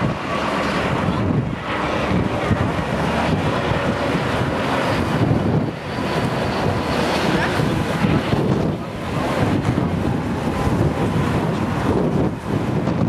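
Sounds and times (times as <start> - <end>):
jet engines roaring: 0.0 - 13.0
wind buffeting microphone: 0.0 - 13.0.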